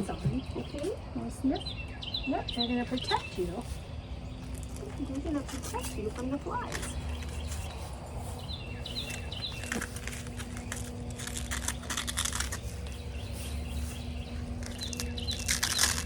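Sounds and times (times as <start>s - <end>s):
steady low hum: 0.0s - 16.0s
velcro straps ripping: 9.0s - 13.6s, 14.5s - 16.0s.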